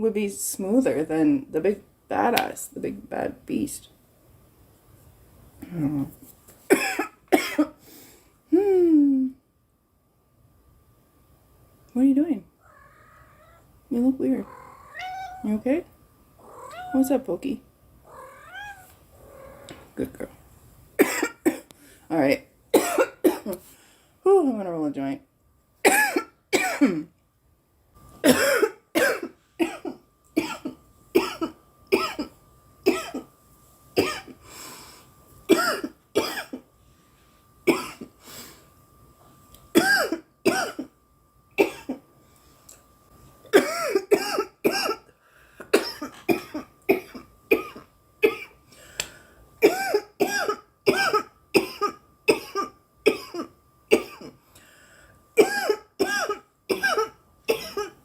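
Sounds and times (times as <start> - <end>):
woman coughing harshly: 6.7 - 7.8, 21.0 - 21.7, 22.7 - 23.6, 25.8 - 27.1, 28.2 - 33.3, 34.0 - 34.4, 35.5 - 36.6, 37.7 - 38.1, 39.8 - 40.9, 41.6 - 42.0, 43.5 - 45.1, 45.7 - 48.6, 49.6 - 54.4, 55.4 - 58.0.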